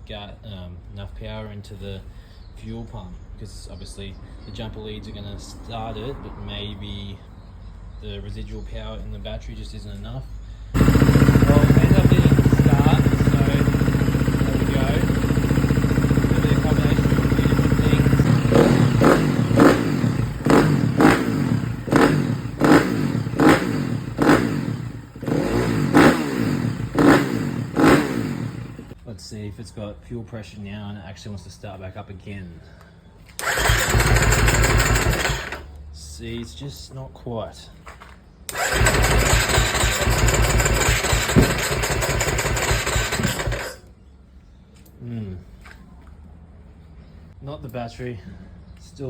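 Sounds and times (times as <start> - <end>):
motorcycle engine cranking on starter: 10.8 - 29.0, 33.4 - 35.7, 38.5 - 43.9.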